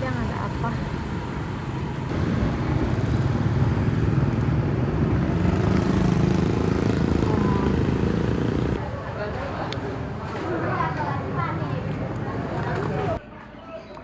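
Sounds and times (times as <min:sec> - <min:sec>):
low road rumble: 0:00.0 - 0:13.2
motorcycle engine running: 0:02.0 - 0:08.8.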